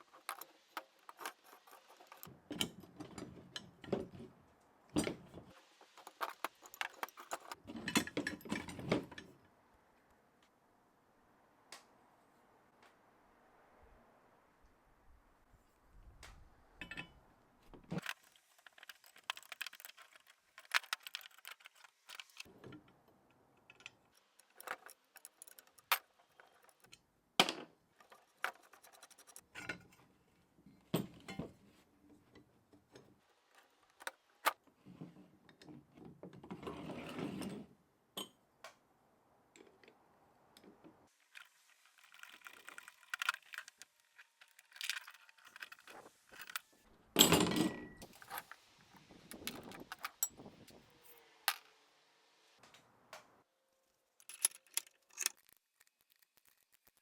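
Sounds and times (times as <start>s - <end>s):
metal parts clinking: 0.0s - 3.8s, 5.9s - 9.3s, 16.8s - 17.2s, 18.0s - 22.5s, 23.6s - 26.9s, 41.9s - 51.7s, 54.2s - 55.6s.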